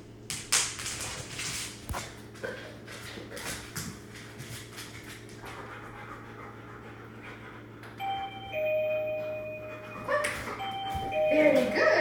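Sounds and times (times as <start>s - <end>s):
dog panting: 5.0s - 8.0s.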